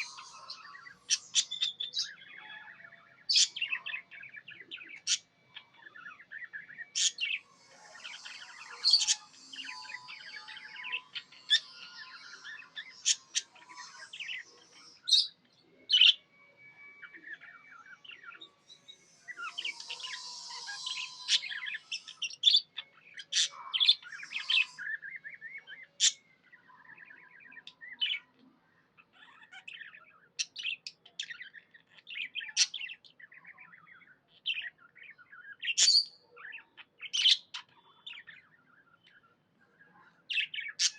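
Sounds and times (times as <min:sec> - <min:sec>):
budgie chirping and warbling: 0:04.8 - 0:16.2, 0:19.2 - 0:25.0.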